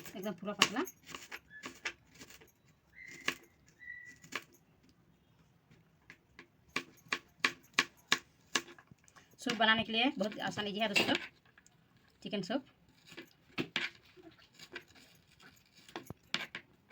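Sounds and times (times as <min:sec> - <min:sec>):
high whistle-like chirps: 0:03.0 - 0:04.2.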